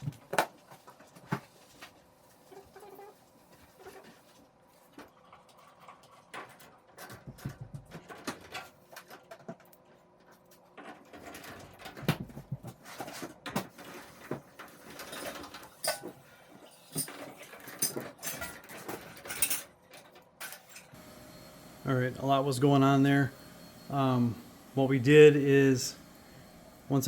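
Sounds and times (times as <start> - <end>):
knocks and scrapes of dryer parts: 10.8 - 16.3.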